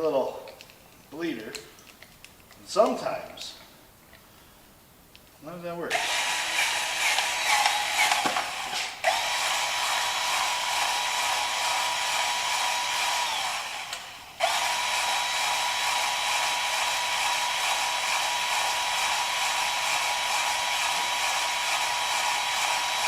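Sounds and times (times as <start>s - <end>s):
power tool hissing and whining: 5.9s - 23.0s.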